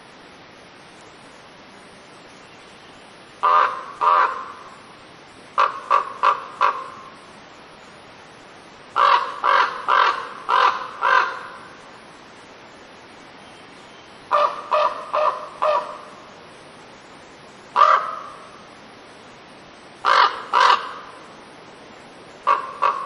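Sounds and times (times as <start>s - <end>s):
steady background hiss: 0.0s - 23.0s
raven cawing: 3.4s - 4.8s, 5.6s - 7.2s, 9.0s - 11.8s, 14.3s - 16.2s, 17.8s - 18.7s, 20.0s - 21.3s, 22.4s - 23.0s.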